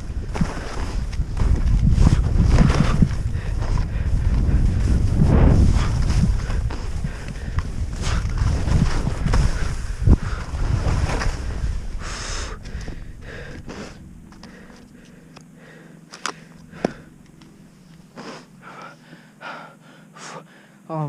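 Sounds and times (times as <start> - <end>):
skis rushing on snow: 0.0 - 14.0
wind buffeting microphone: 0.0 - 15.0.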